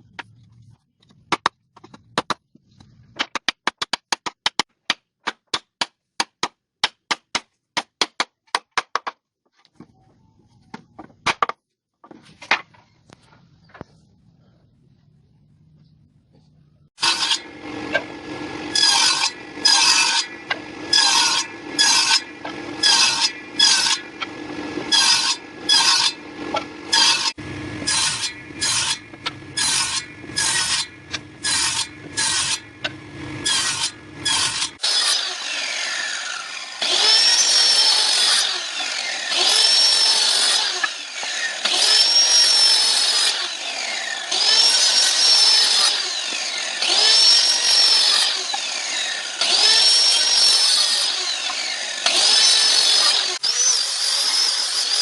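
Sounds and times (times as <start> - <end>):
power tool whining: 17.0 - 55.0.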